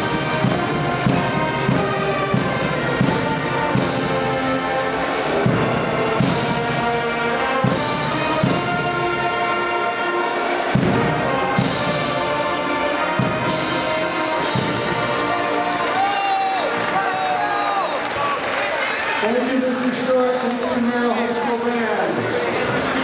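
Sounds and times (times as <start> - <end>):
trumpets and trombones chords: 0.0 - 18.0.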